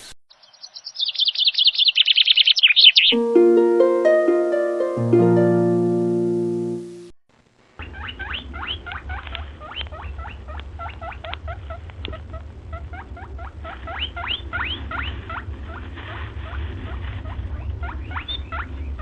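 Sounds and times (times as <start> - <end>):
small birds chirping: 0.3 - 3.2, 7.8 - 15.8, 16.9 - 19.0
music: 3.2 - 7.1.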